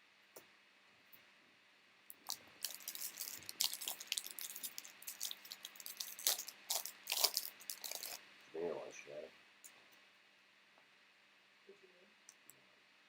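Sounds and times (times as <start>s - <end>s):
wrapper crinkling and tearing: 2.1s - 8.2s.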